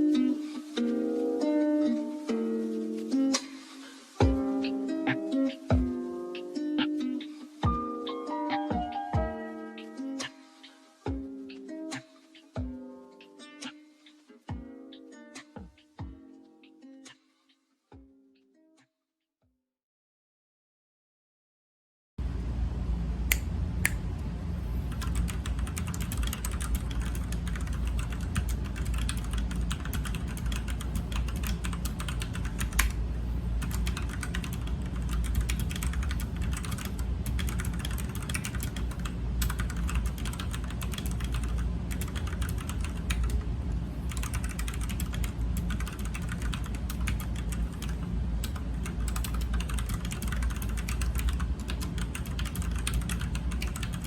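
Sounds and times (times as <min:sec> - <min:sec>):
steady low hum: 0:22.2 - 0:54.0
mechanical keyboard typing: 0:24.9 - 0:33.0, 0:33.6 - 0:43.4, 0:44.1 - 0:54.0.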